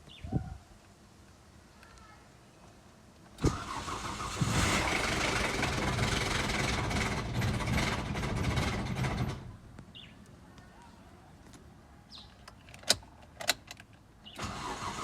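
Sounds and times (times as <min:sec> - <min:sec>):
engine cranking: 0:03.4 - 0:09.5, 0:14.4 - 0:15.0
car engine running with rattle: 0:04.5 - 0:09.6.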